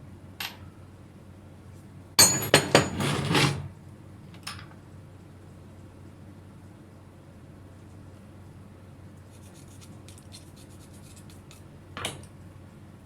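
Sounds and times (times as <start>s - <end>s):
metal parts clattering: 2.2s - 3.7s.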